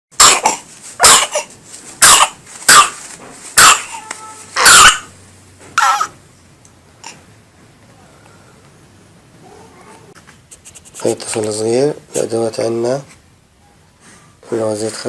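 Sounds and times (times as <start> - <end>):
infant coughing: 0.2 - 2.4.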